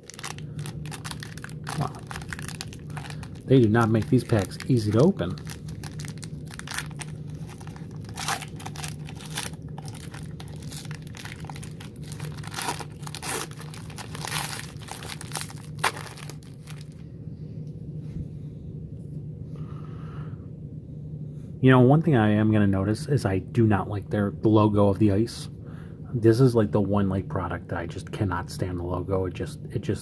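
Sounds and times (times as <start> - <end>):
wrapper tearing and crinkling: 0.0 - 17.0
low steady hum: 0.0 - 30.0.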